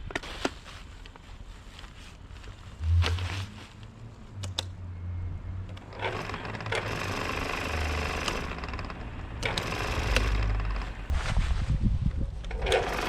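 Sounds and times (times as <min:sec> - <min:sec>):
sharp clicks: 0:04.4 - 0:04.8
power tool humming: 0:05.8 - 0:11.1.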